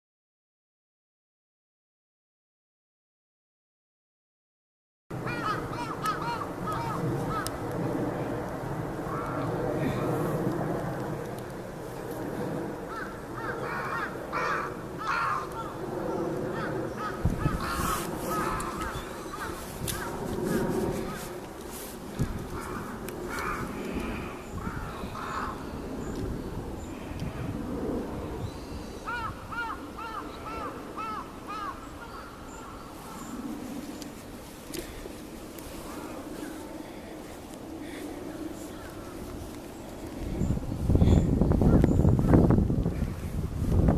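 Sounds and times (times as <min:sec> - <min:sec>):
crows cawing: 0:05.2 - 0:07.6, 0:09.1 - 0:10.0, 0:12.9 - 0:15.8, 0:16.5 - 0:21.3, 0:22.4 - 0:25.7, 0:29.1 - 0:33.3.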